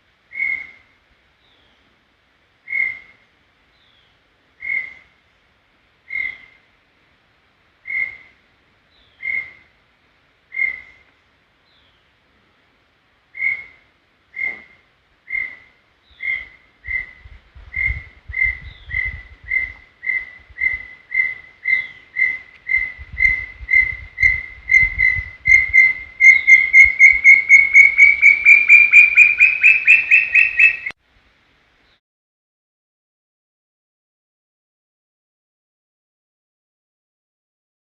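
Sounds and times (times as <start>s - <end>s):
bird whistling notes: 17.8s - 30.9s.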